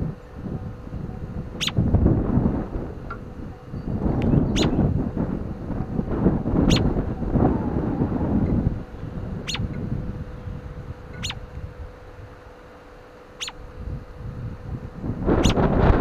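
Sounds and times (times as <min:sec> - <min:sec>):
wind rumbling on microphone: 0:00.0 - 0:16.0
songbird sharp downward calls: 0:01.6 - 0:01.8, 0:03.8 - 0:05.0, 0:06.6 - 0:11.5, 0:13.3 - 0:13.7, 0:15.4 - 0:15.7.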